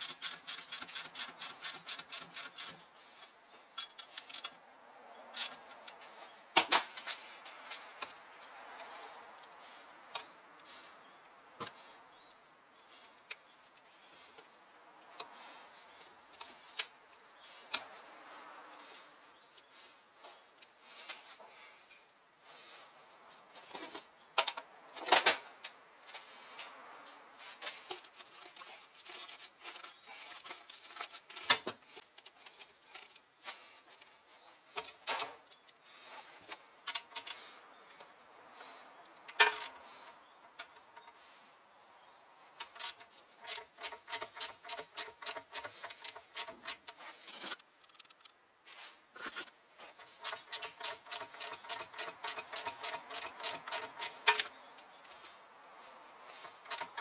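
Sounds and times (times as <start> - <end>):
sharp knocks and rattles: 0.0 - 2.8, 39.3 - 39.8, 42.6 - 48.3, 49.2 - 54.5, 56.4 - 57.0
steady regular ticking: 42.6 - 47.0, 50.0 - 54.5, 56.4 - 57.0.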